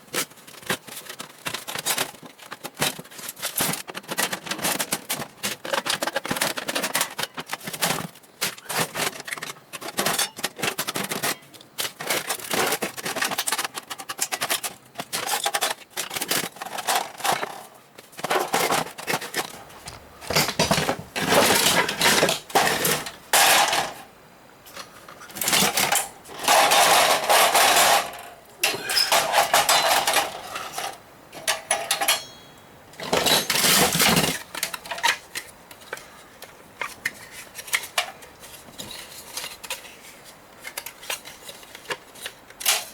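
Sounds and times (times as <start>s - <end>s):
continuous metal scraping: 0.0s - 42.9s
metal parts clattering and clinking: 9.0s - 24.1s, 24.7s - 36.1s, 36.8s - 42.9s.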